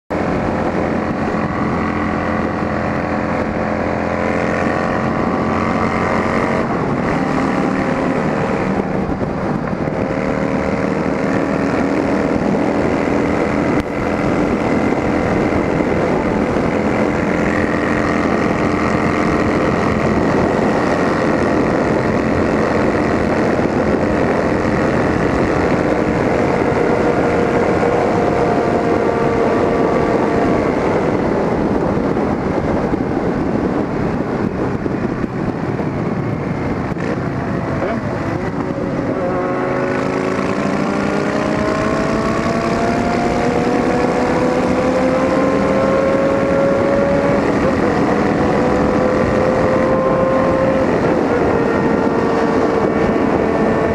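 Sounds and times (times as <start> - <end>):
motorcycle engines running: 0.1 - 53.9.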